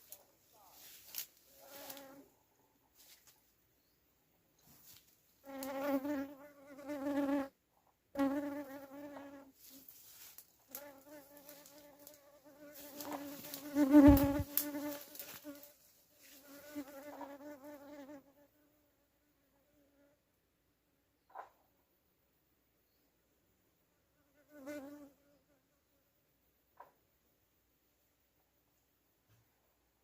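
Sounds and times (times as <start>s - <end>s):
flying insect buzzing: 5.4s - 7.5s, 10.7s - 18.4s.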